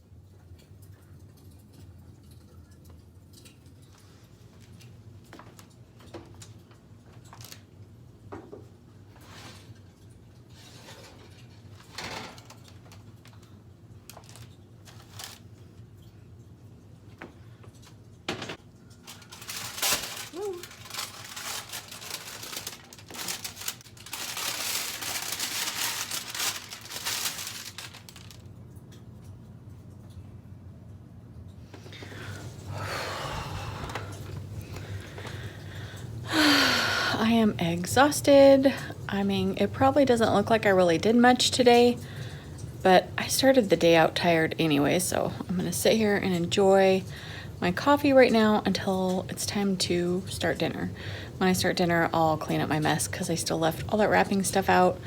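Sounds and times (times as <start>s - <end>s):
rustling and handling noise: 3.9s - 7.7s, 8.5s - 16.1s, 17.0s - 30.2s, 31.6s - 36.2s.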